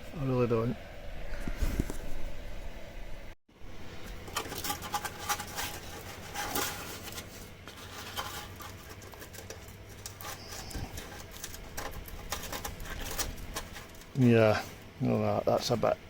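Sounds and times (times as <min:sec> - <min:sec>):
tapping and scratching on steel: 0:04.2 - 0:14.2.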